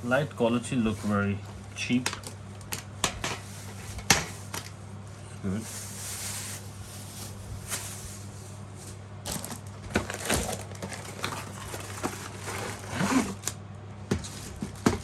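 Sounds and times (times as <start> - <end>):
steady low hum: 0.0 - 15.0
plastic packaging rustling: 5.5 - 15.0.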